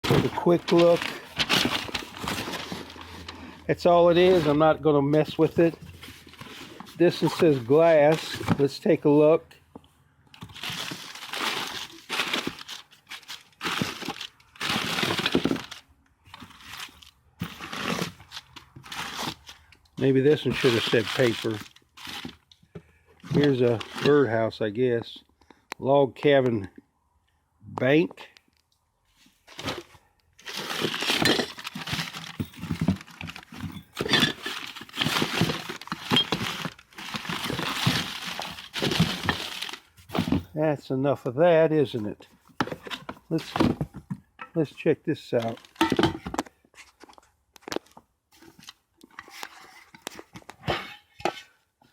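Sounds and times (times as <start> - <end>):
hard objects clattering and clinking: 0.0 - 8.6, 10.4 - 19.6, 29.5 - 40.6, 45.4 - 46.6, 47.7 - 51.5
paper crinkling and rustling: 0.0 - 8.7, 10.4 - 22.5, 23.2 - 24.2, 29.2 - 40.5.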